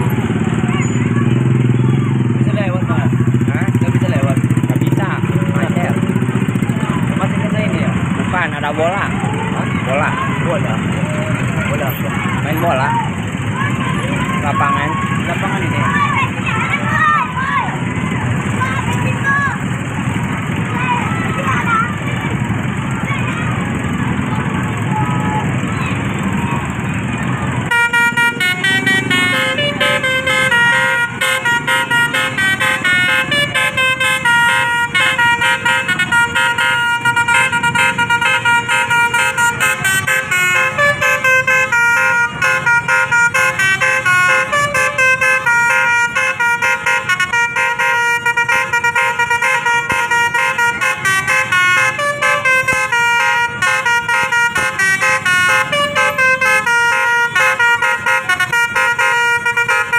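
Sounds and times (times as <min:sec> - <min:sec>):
multi-tone bus horn melody: 0:26.2 - 0:59.9.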